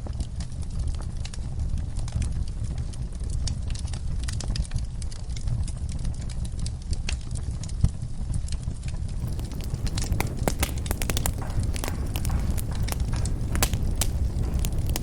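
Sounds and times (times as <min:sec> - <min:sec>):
wood fire crackling: 0:09.1 - 0:15.0.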